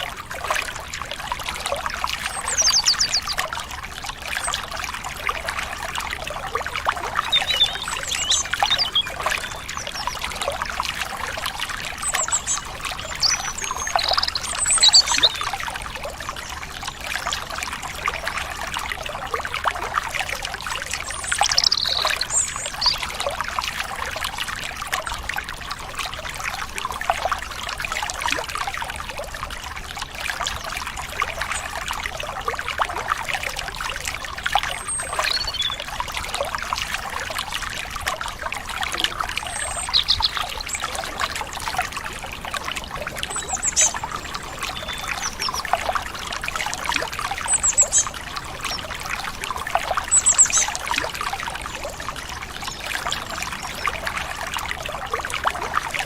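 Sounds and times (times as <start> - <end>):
stream water trickling: 0.0 - 56.0
bird chirps: 2.4 - 3.4, 7.2 - 10.2, 12.1 - 15.5, 21.0 - 23.0, 35.0 - 35.8, 39.4 - 40.9, 43.3 - 45.6, 50.1 - 50.7.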